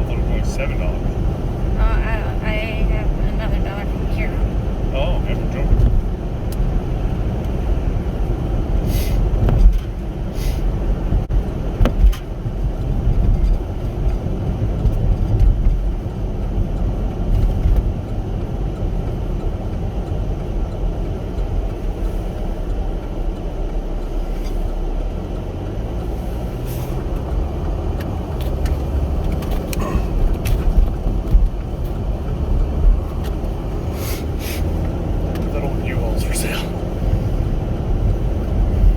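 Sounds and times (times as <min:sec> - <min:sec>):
car cabin road rumble: 0:00.0 - 0:38.9.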